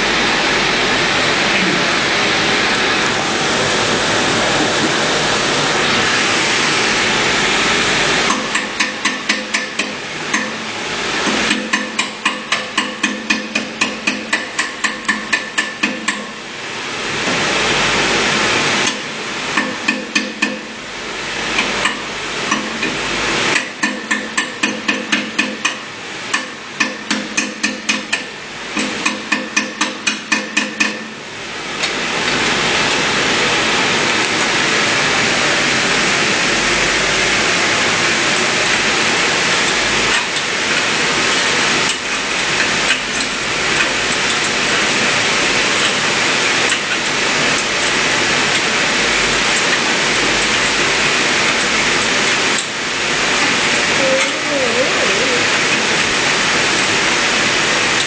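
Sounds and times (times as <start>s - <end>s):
steady rushing noise: 0.0s - 8.9s.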